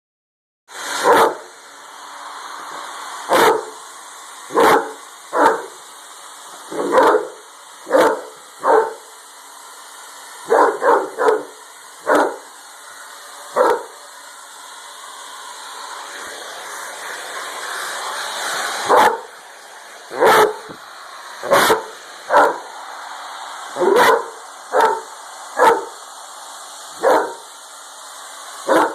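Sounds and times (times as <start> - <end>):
hair dryer blowing: 0.7 - 28.9
dog barking: 1.0 - 1.5, 3.3 - 3.8, 4.5 - 5.8, 6.7 - 9.1, 10.4 - 12.5, 13.6 - 14.0, 18.8 - 19.3, 20.1 - 20.7, 21.4 - 22.7, 23.8 - 26.0, 27.0 - 27.5, 28.7 - 28.9.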